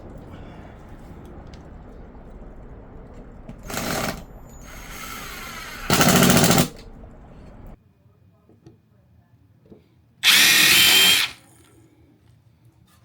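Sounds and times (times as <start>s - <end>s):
power drill running: 1.5s - 7.8s, 10.2s - 11.4s.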